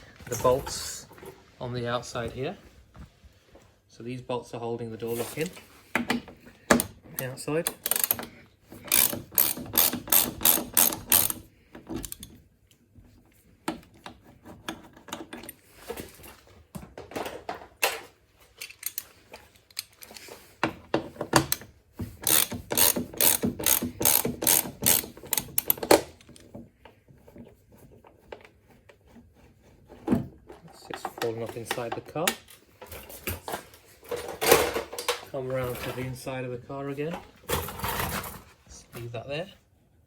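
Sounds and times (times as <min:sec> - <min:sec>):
hand ratchet clicking: 0:06.8 - 0:12.3, 0:22.2 - 0:26.4.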